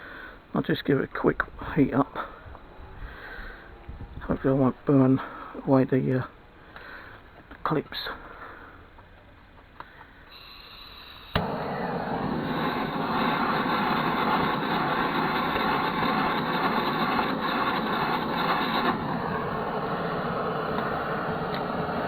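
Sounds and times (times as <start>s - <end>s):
blowtorch flame hissing: 10.3s - 22.0s
blowtorch lighting pop: 11.3s - 22.0s.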